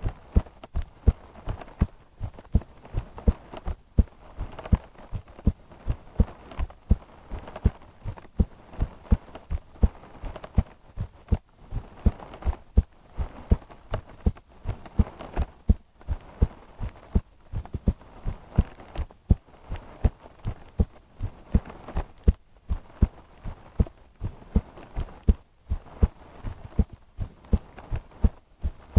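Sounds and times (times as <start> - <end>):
heartbeat thumps: 0.0 - 28.9.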